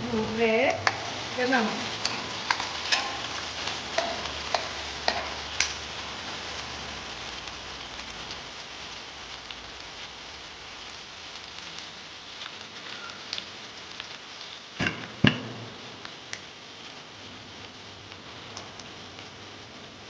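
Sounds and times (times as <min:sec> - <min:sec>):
food sizzling in hot oil: 0:00.0 - 0:20.0
utensil clicking against pan: 0:00.7 - 0:01.3, 0:01.9 - 0:05.8.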